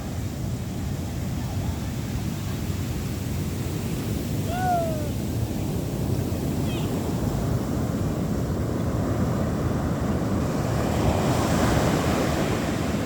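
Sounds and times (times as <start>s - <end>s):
ocean waves breaking: 3.2s - 13.0s.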